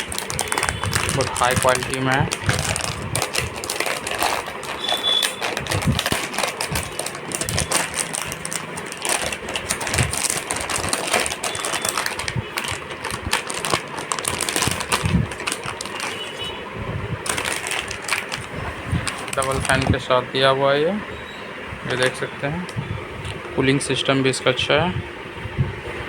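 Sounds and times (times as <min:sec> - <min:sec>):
hands handling packaging: 0:00.0 - 0:16.6, 0:17.2 - 0:20.1, 0:21.9 - 0:22.2.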